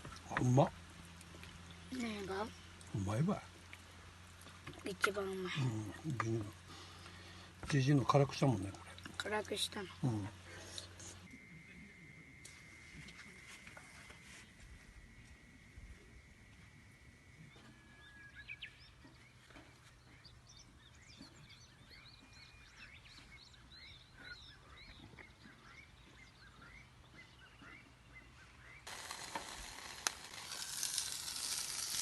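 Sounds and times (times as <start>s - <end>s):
bird chirping: 17.4s - 28.9s
food sizzling in frying: 28.9s - 32.0s.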